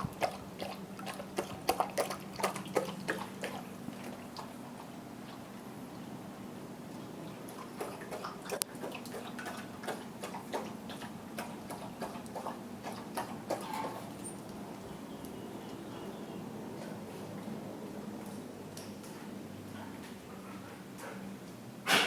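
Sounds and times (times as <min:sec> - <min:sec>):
dog lapping water: 0:00.0 - 0:05.7, 0:07.4 - 0:14.8.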